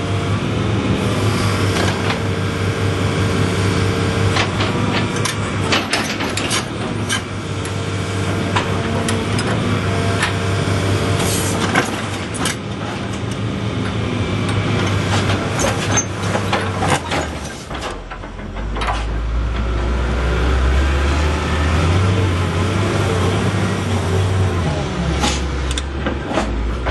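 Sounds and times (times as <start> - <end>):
excavator diesel engine running: 0.0 - 26.9
metallic clanks and knocks: 4.4 - 7.2, 14.9 - 19.9, 26.0 - 26.9.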